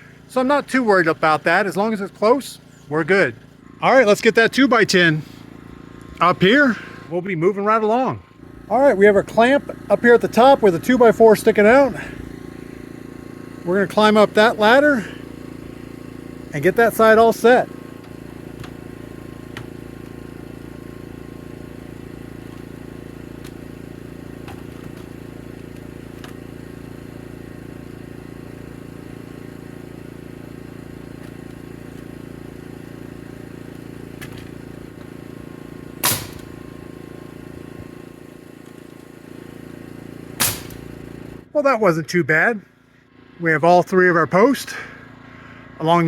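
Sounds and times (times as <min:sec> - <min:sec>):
steady low hum: 0:00.0 - 0:18.8, 0:42.5 - 0:46.0
nail gun firing: 0:36.0 - 0:36.6, 0:40.3 - 0:41.1.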